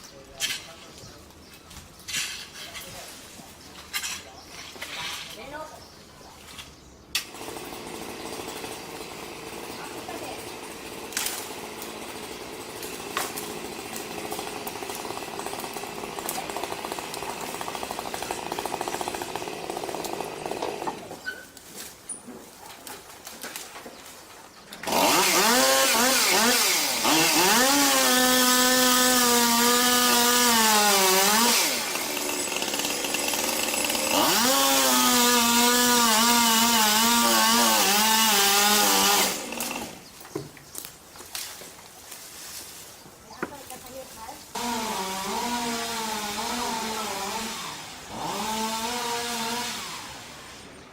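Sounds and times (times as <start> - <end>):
chainsaw revving: 7.2 - 21.2, 24.8 - 40.1, 44.5 - 50.7.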